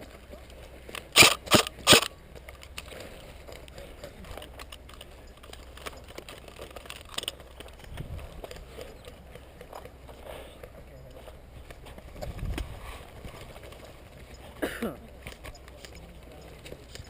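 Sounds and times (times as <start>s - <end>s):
airsoft rifle shot: 1.2s - 2.1s.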